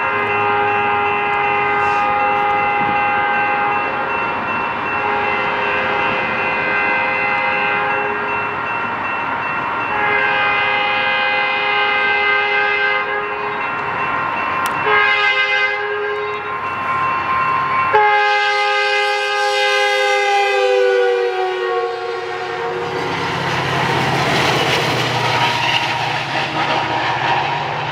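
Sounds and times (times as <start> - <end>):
locomotive air horn blasts: 0.0 - 3.9, 5.0 - 8.2, 9.9 - 13.6, 14.8 - 16.5, 17.9 - 23.1
passing train rumble: 0.0 - 27.9.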